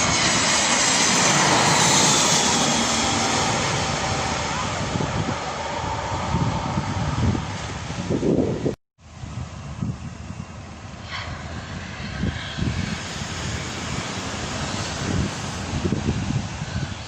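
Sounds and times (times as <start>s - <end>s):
jet engines running: 0.0s - 17.0s
wind gusting on microphone: 0.0s - 17.0s.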